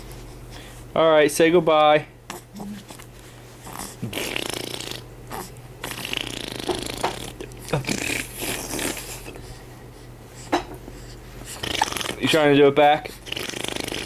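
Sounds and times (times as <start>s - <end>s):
baby grunting and squeaking: 2.3s - 2.9s, 11.5s - 12.2s.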